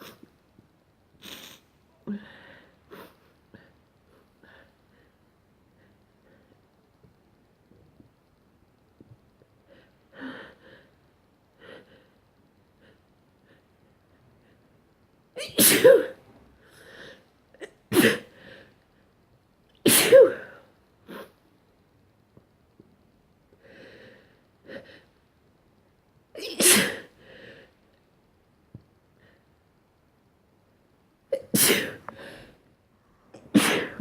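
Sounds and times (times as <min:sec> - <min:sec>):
person sneezing: 0:15.4 - 0:16.2, 0:17.6 - 0:18.3, 0:19.9 - 0:20.6, 0:26.4 - 0:27.1, 0:31.4 - 0:32.0, 0:33.4 - 0:34.0
person breathing: 0:32.0 - 0:32.6.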